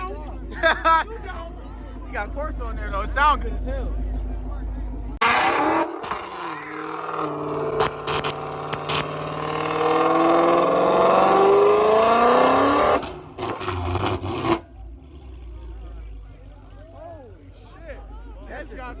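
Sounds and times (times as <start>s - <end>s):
car engine revving under load: 1.7s - 16.8s.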